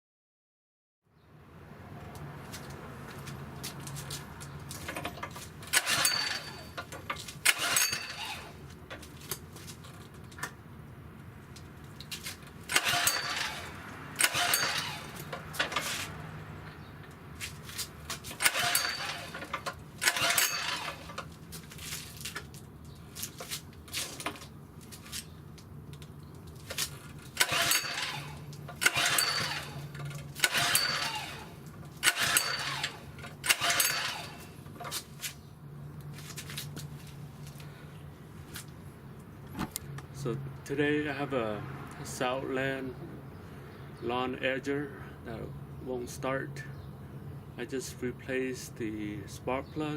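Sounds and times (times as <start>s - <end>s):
engine turning over: 4.7s - 8.6s, 12.6s - 16.2s, 18.1s - 21.4s, 26.7s - 35.1s
recoil starter pulls: 4.7s - 10.5s, 12.6s - 16.1s, 18.1s - 21.3s, 26.7s - 35.1s.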